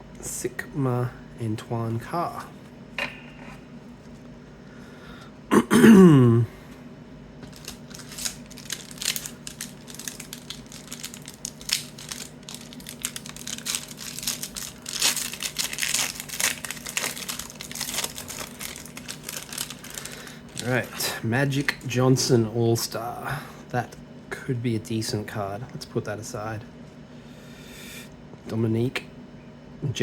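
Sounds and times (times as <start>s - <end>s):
person clearing throat: 5.5s - 6.6s
foil wrapper crinkling and tearing: 7.4s - 22.0s.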